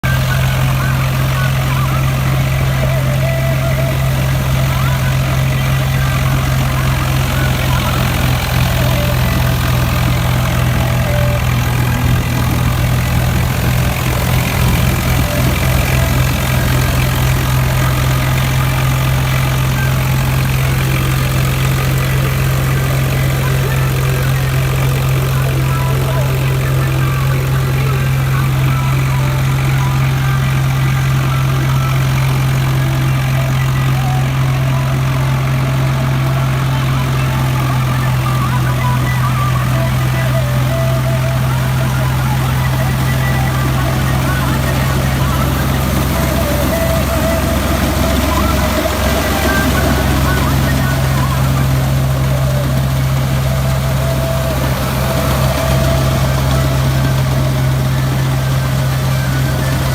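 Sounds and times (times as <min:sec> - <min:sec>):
tractor diesel engine running: 0:00.0 - 0:59.9.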